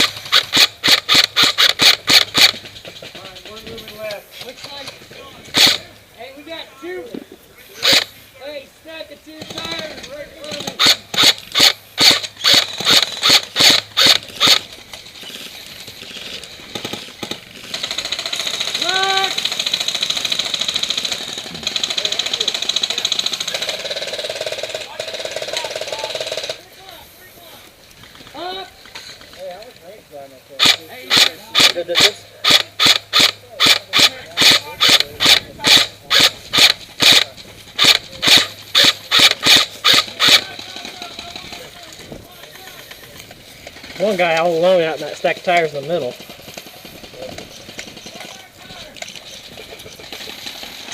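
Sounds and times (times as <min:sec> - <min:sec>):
airsoft rifle shots: 0:00.0 - 0:02.8, 0:05.5 - 0:05.9, 0:07.8 - 0:08.2, 0:09.4 - 0:14.7, 0:30.6 - 0:41.7.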